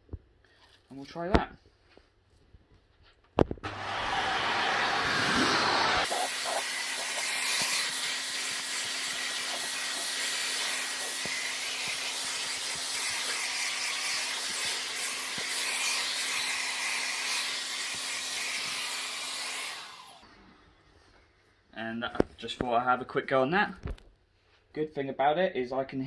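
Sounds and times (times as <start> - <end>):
vacuum cleaner running: 3.6 - 20.3.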